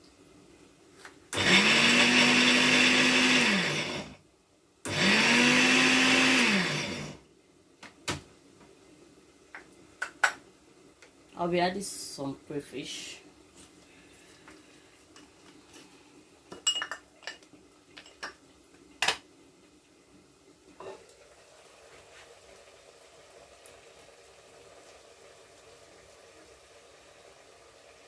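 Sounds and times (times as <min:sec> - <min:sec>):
oil and onions sizzling: 0:20.6 - 0:28.0.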